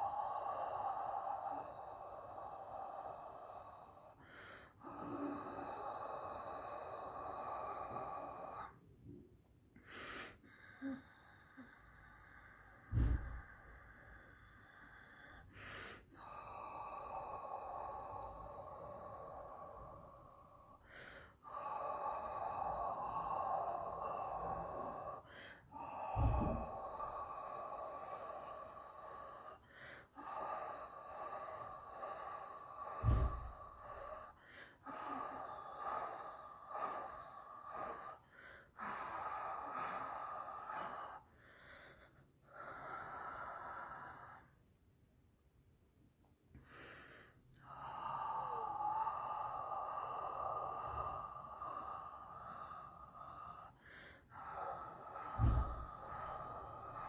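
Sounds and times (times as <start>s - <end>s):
person breathing loudly: 0.0s - 44.9s, 46.5s - 57.0s
low thumps: 12.9s - 13.4s, 26.1s - 26.8s.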